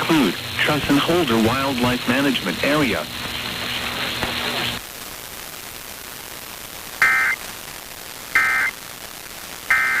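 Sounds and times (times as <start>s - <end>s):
static hiss: 0.0s - 10.0s
buzzy digital data tones: 7.0s - 7.6s, 8.3s - 10.0s.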